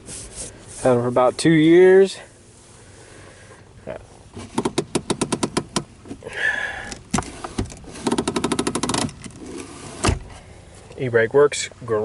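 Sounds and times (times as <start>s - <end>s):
hand brake release scrape: 4.3s - 10.8s
hand brake lever ratcheting clicks: 4.4s - 6.2s, 6.8s - 10.3s.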